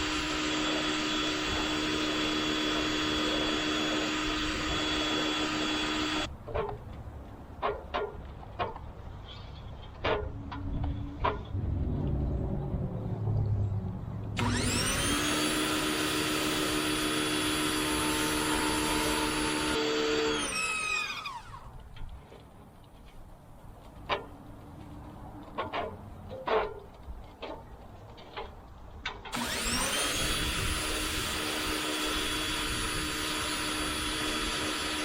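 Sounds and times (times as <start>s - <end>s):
pressure washer motor and pump: 0.0s - 6.3s, 14.4s - 21.7s, 29.2s - 35.0s.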